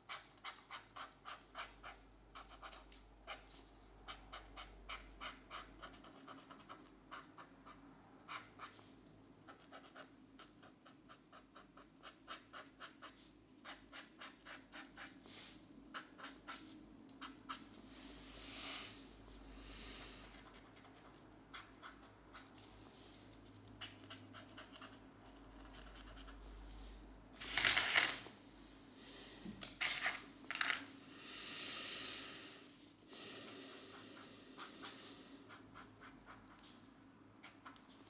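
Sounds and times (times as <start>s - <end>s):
markers scratching on paper: 20.4s - 26.5s.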